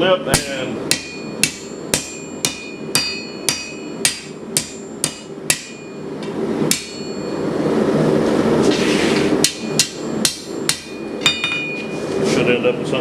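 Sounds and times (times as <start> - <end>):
hammer striking steel on anvil: 0.3 - 7.5, 9.4 - 11.9.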